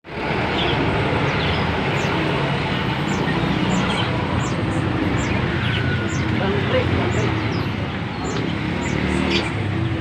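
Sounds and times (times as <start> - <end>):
traffic rumble: 0.0 - 10.0
small bird chirping: 3.0 - 9.6.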